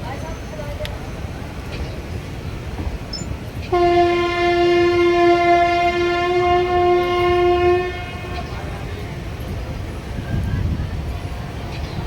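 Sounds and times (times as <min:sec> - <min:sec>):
train horn long note: 0:03.7 - 0:08.5.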